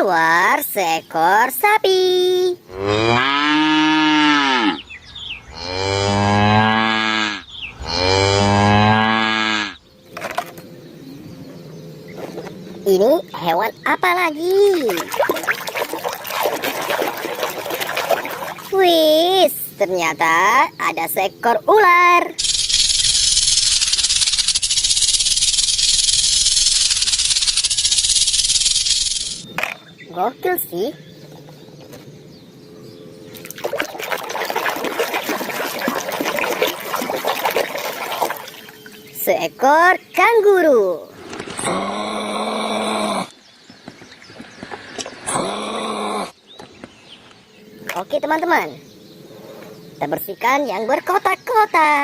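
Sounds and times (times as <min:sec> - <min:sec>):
cow mooing: 0:02.7 - 0:04.9, 0:05.5 - 0:09.8
snake rattling hiss: 0:22.4 - 0:29.5.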